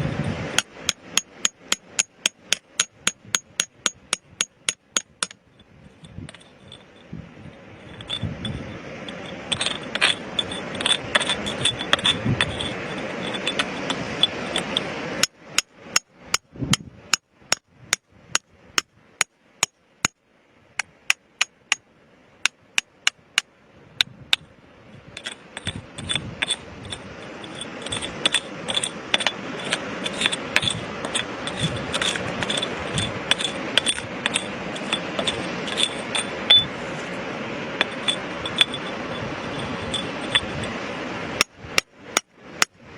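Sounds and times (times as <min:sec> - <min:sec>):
hand tools scraping on rock: 0:00.2 - 0:20.2, 0:25.2 - 0:37.2, 0:37.8 - 0:40.8
hand tools tapping on rock: 0:00.5 - 0:07.0, 0:07.8 - 0:20.2, 0:20.8 - 0:21.8, 0:25.2 - 0:36.7, 0:37.8 - 0:38.9, 0:39.5 - 0:40.7.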